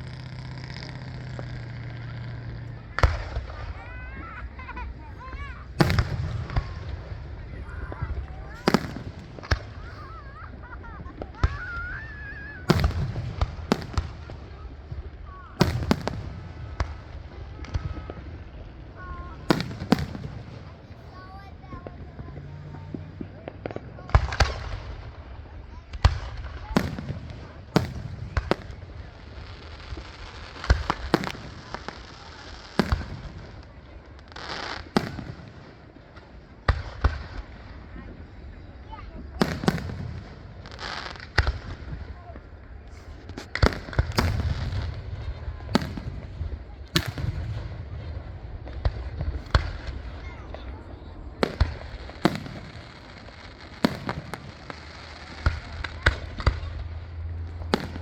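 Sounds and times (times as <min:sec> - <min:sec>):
firework hiss: 0:00.0 - 0:14.6
fireworks bangs: 0:00.0 - 0:58.0.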